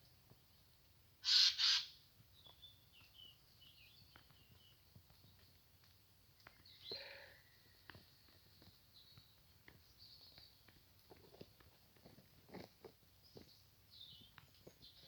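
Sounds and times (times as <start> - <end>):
small birds chirping: 0.3 - 5.7, 6.3 - 11.0, 13.1 - 15.0
bird harsh rasping calls: 1.2 - 1.9.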